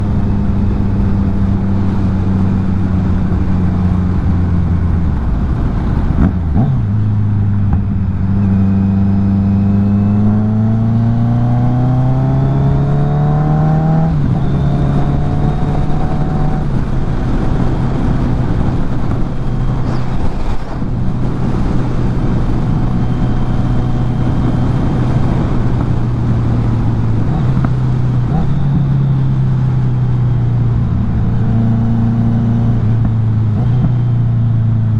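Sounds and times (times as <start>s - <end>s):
motorcycle engine revving: 0.0s - 34.9s
gear change: 14.1s - 34.1s.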